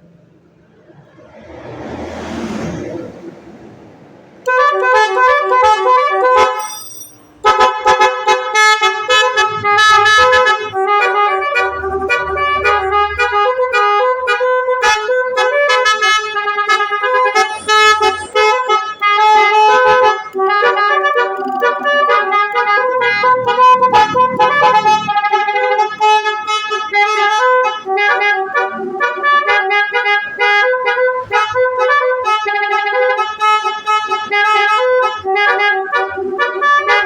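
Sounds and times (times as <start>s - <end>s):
multi-tone horn playing a tune: 4.4s - 6.7s, 7.4s - 37.0s.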